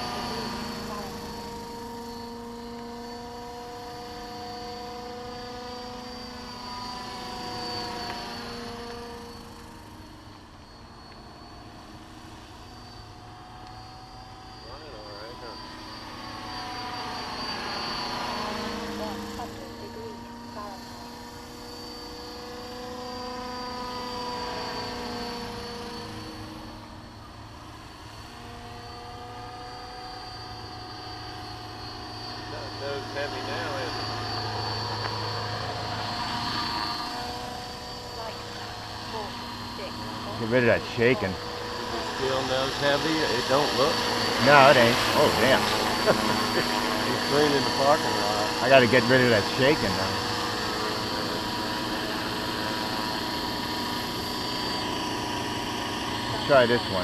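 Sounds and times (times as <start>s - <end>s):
model helicopter whine: 0.0s - 57.0s
rotor hum: 0.0s - 57.0s.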